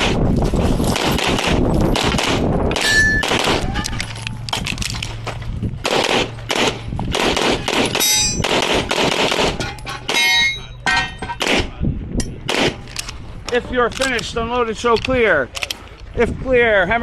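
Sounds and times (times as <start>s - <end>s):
rapid pistol shots: 0.8s - 3.7s, 5.8s - 10.2s, 11.4s - 11.8s, 12.5s - 12.9s
steel targets ringing: 2.8s - 3.4s, 7.8s - 8.5s, 9.6s - 11.4s.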